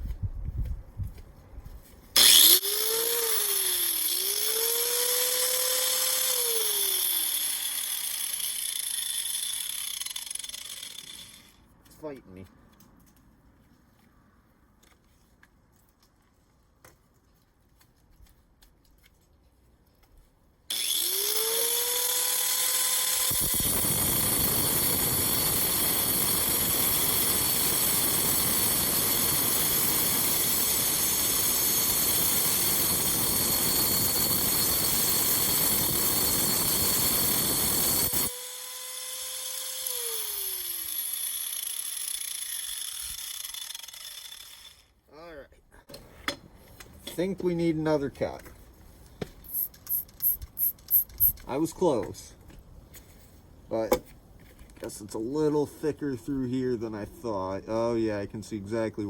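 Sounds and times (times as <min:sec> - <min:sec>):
angle grinder grinding stone: 0:02.2 - 0:11.6, 0:20.7 - 0:45.0, 0:49.4 - 0:51.5.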